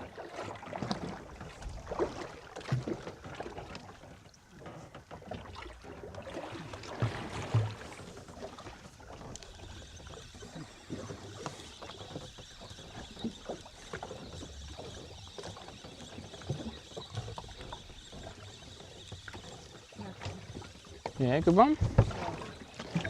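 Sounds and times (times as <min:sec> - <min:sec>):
water lapping against boat hull: 0:00.0 - 0:23.0.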